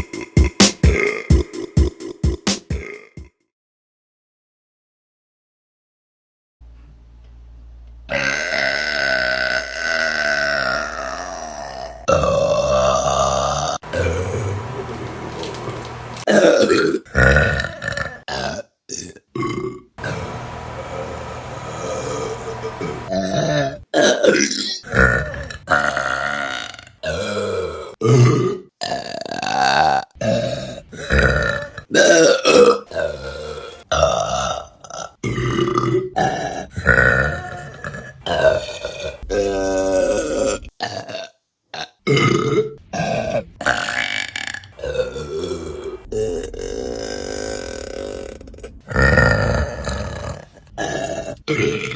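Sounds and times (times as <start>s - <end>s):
women burping loudly: 31.1s - 39.0s
woman burping: 31.9s - 33.1s.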